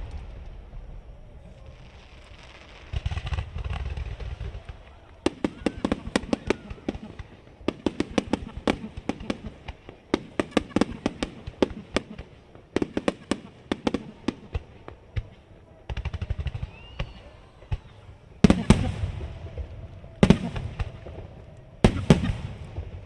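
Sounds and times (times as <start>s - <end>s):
rising firework whistle: 0.0s - 8.4s, 13.9s - 23.0s
fireworks bangs and crackling: 0.0s - 23.0s.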